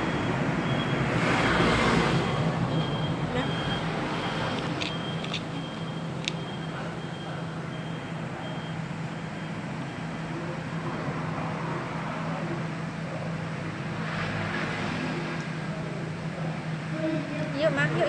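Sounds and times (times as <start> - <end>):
vehicle passing by: 0.0 - 4.8, 13.2 - 18.0
traffic engine hum: 0.0 - 18.0.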